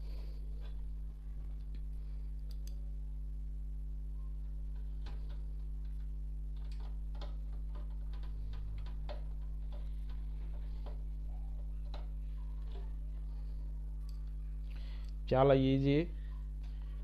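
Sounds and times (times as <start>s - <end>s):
steady electrical hum: 0.0s - 17.0s.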